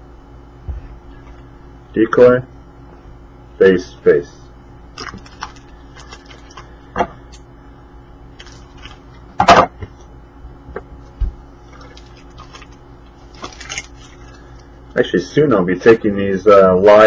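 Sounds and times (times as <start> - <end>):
cards rustling and clicking: 5.0 - 6.7.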